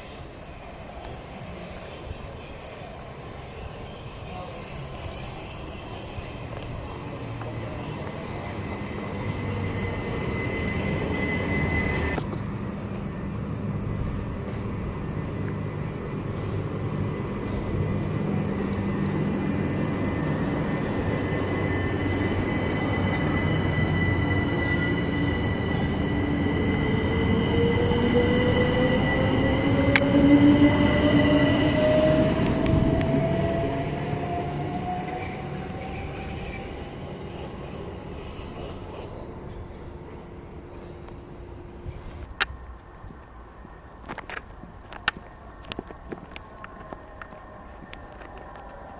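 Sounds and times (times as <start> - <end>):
train rumbling on rails: 0.0 - 48.9
high wheel squeal: 7.6 - 12.2, 20.2 - 32.6, 33.4 - 40.3.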